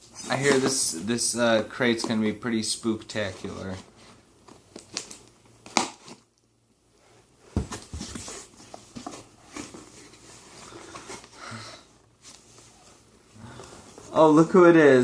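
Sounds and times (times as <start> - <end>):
cardboard packing rustling: 0.0 - 1.0, 7.5 - 11.4.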